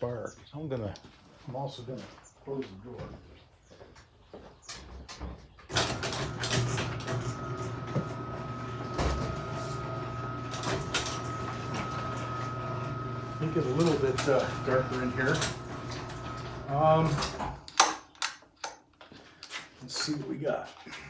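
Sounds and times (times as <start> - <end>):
motorised door motor humming: 5.7 - 17.7.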